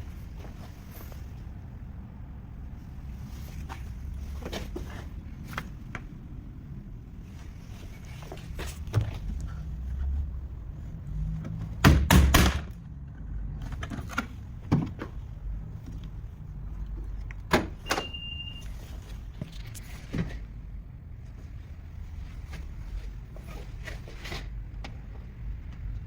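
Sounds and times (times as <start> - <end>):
knocks and clunks: 13.6 - 15.3
short high beep: 17.8 - 18.7.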